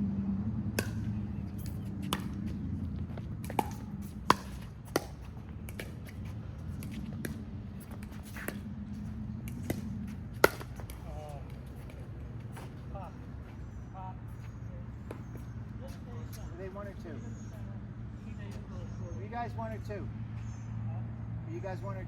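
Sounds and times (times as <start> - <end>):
steady low hum: 0.0 - 18.9
paddles striking ball: 0.8 - 6.2, 9.4 - 11.2.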